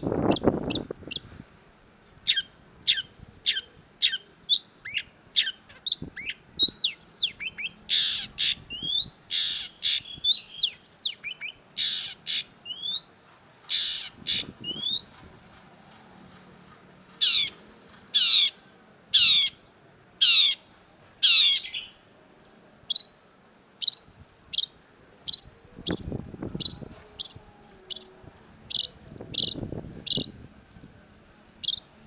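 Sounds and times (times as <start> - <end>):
shrike singing: 0.0 - 15.2, 23.8 - 32.0
harsh rasping bird calls: 0.0 - 22.0, 22.9 - 23.2, 23.8 - 30.4, 31.6 - 32.0.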